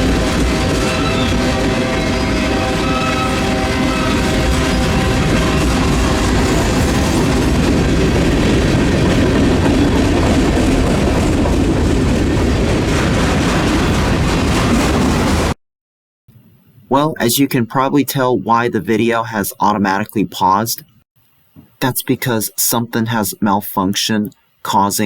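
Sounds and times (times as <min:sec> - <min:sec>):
freight train wheels clattering: 0:00.0 - 0:15.6.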